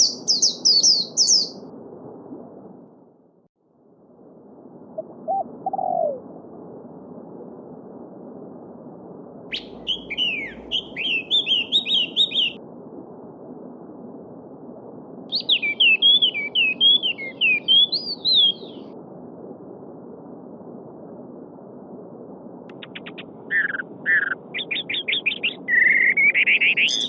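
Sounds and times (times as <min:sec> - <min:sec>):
songbird chirping: 0:00.0 - 0:01.6, 0:09.5 - 0:12.6, 0:15.3 - 0:18.9, 0:22.7 - 0:27.0.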